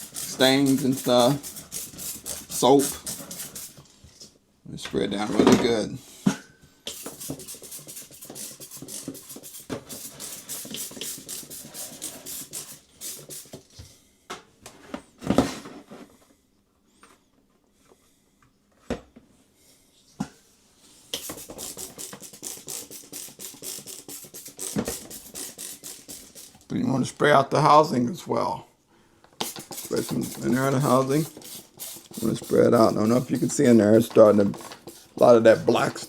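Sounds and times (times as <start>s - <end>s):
spray bottle squirting: 0.0s - 3.8s, 6.9s - 13.6s, 21.1s - 26.7s, 29.4s - 36.0s.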